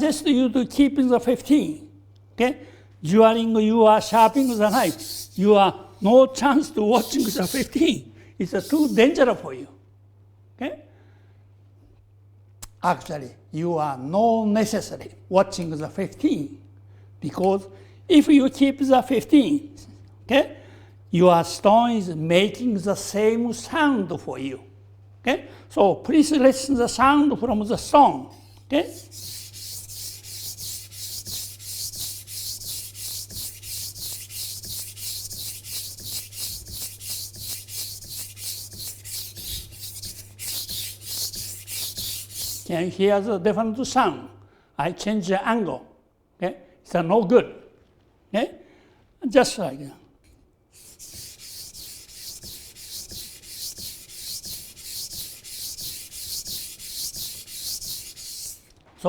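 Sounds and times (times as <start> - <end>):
knife scraping on whetstone: 4.1 - 5.5, 7.0 - 7.8, 28.4 - 42.7, 50.8 - 58.7.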